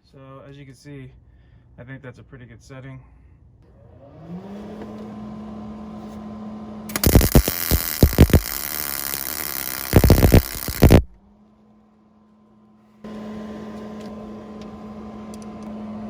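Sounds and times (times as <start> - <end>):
sharp pops: 6.9 - 11.1
welding arc crackling: 6.9 - 11.2
steady hum: 6.9 - 11.7.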